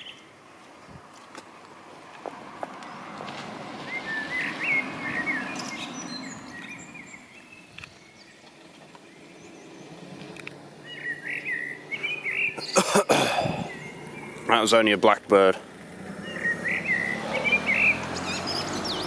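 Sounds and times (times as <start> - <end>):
blackbird singing: 0.0 - 0.3, 3.8 - 15.5, 16.1 - 19.0.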